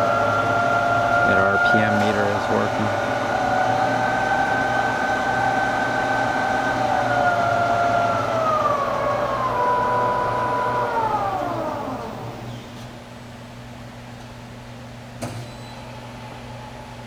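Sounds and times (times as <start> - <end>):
lathe gear whine: 0.0 - 13.0.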